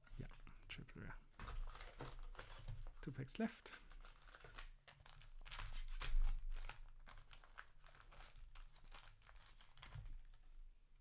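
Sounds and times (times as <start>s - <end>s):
foil wrapper crinkling: 1.4s - 3.0s, 3.7s - 10.4s.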